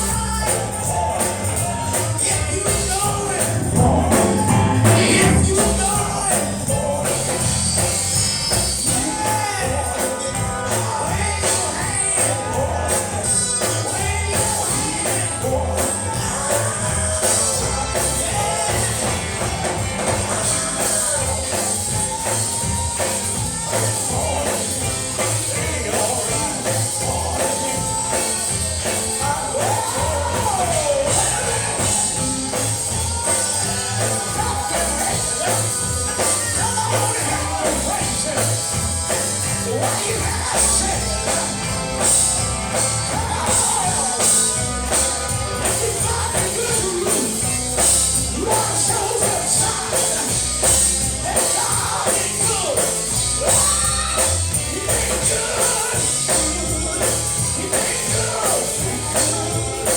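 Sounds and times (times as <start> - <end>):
band playing a driving beat: 0.0 - 59.9
gospel singing: 0.0 - 59.9.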